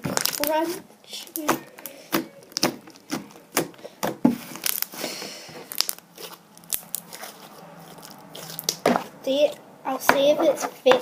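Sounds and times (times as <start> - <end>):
slime popping and crackling: 0.0 - 9.2.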